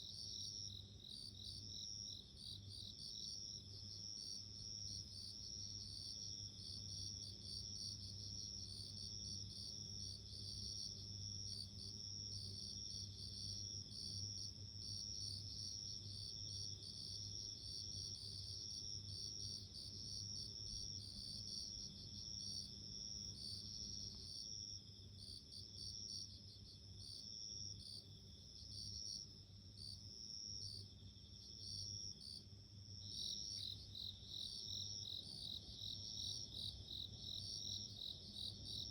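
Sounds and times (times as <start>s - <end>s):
crickets chirping: 14.8s - 38.9s.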